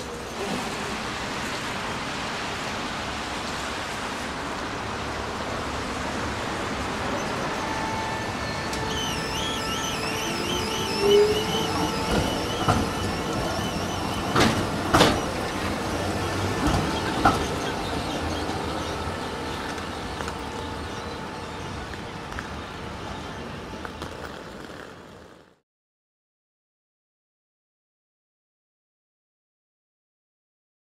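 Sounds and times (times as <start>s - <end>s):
tram rumbling on rails: 0.0s - 25.6s
high wheel squeal: 5.6s - 24.9s
wheels knocking: 6.7s - 25.4s.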